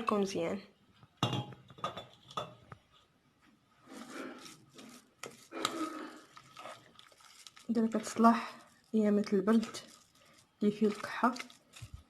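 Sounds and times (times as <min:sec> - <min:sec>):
stirring thick paste: 0:03.5 - 0:12.0.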